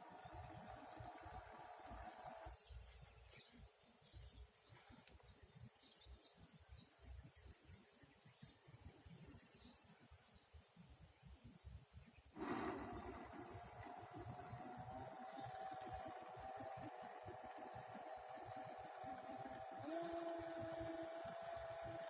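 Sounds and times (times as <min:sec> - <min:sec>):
mid-pitched hum: 0:00.0 - 0:06.0, 0:12.4 - 0:22.0
crickets chirring: 0:00.0 - 0:22.0.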